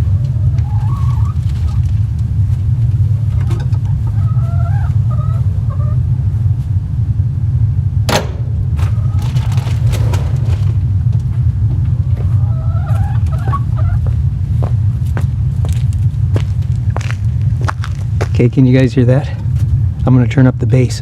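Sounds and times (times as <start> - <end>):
chickens clucking: 0.0 - 2.1, 3.0 - 6.5, 8.6 - 14.3
distant rocket engine rumble: 0.0 - 21.0.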